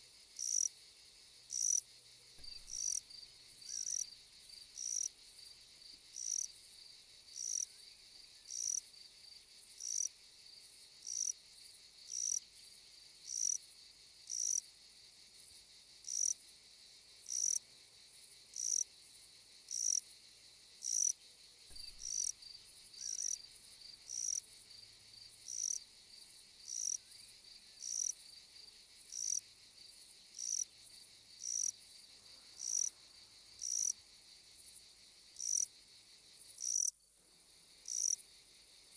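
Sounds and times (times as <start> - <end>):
insect chirping: 0.0 - 38.9
steady high-pitched hiss: 0.0 - 38.9.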